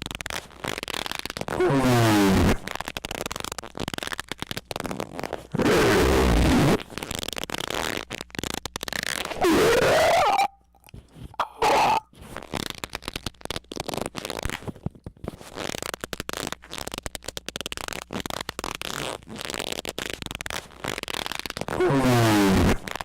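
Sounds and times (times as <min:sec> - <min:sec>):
crackling clicks and rasps: 0:00.0 - 0:01.7, 0:02.4 - 0:23.0
squeak rising in pitch: 0:09.3 - 0:10.6, 0:11.4 - 0:12.0.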